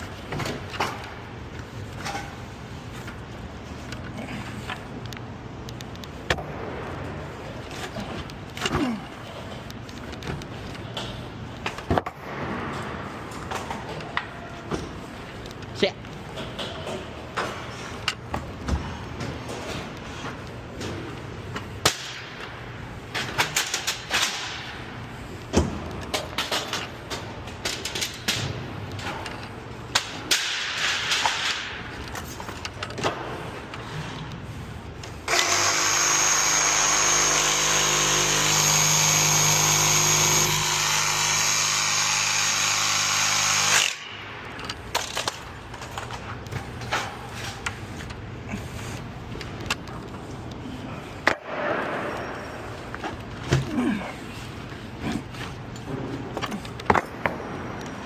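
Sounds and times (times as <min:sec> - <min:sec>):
power tool motor running: 0:35.3 - 0:44.0.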